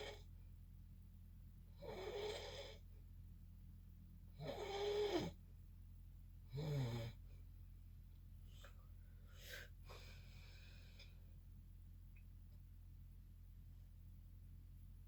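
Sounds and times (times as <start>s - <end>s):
person snoring: 1.8s - 2.8s, 4.4s - 5.4s, 6.5s - 7.2s.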